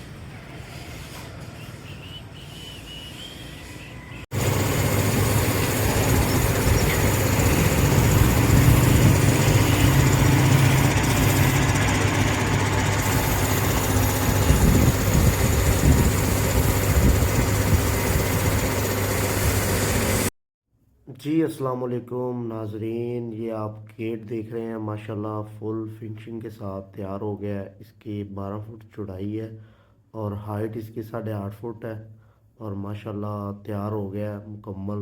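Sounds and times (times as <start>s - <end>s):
mechanical rumble with low hum: 4.4s - 20.3s.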